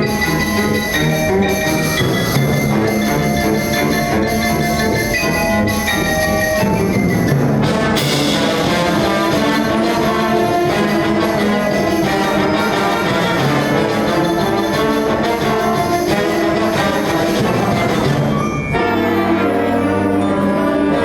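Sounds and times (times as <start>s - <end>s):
brass chords: 0.0s - 21.0s
wind band playing: 0.0s - 21.0s
percussion hit: 5.8s - 18.6s.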